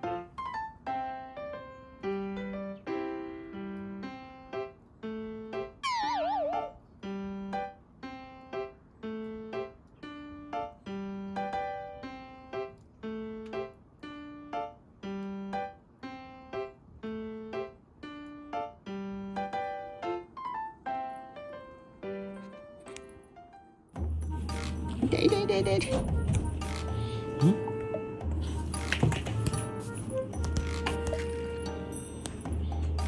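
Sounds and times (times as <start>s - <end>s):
electric piano melody: 0.0s - 25.3s
wavering tone sliding downward: 5.8s - 6.7s.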